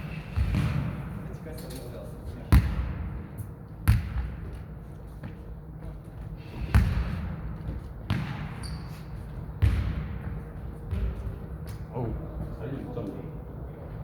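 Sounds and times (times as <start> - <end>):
ball thuds echoing: 0.3 - 1.2.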